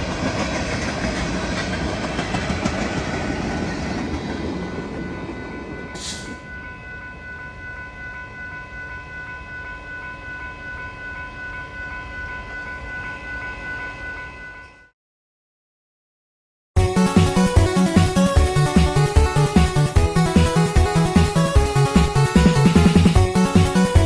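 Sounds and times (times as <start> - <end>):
train rumbling past: 0.0 - 9.0.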